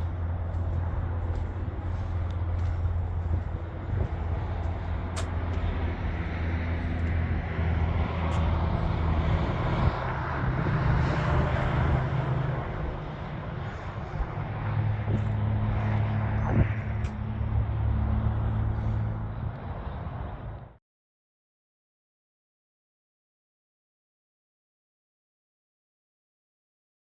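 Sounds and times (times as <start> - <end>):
road noise: 0.0 - 20.8
truck engine drone: 0.0 - 20.8.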